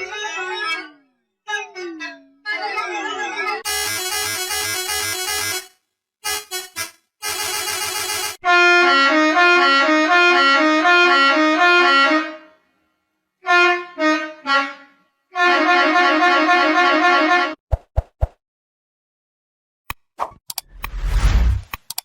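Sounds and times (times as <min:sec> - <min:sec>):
musical bus horn: 0:03.6 - 0:17.6.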